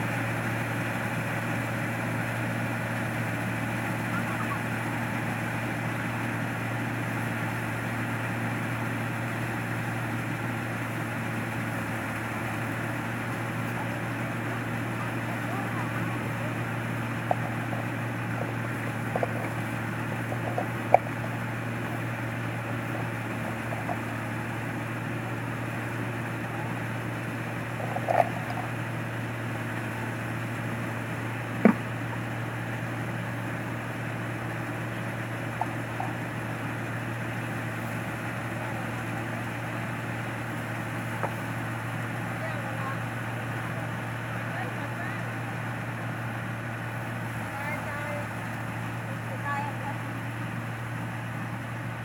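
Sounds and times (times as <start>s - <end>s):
engine humming: 0.0s - 52.0s
sharp clicks and knocks: 31.6s - 31.9s.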